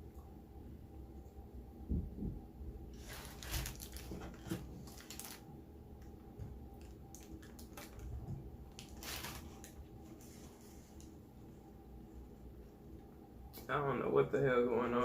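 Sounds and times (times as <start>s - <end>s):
soft low thumps: 1.8s - 2.8s.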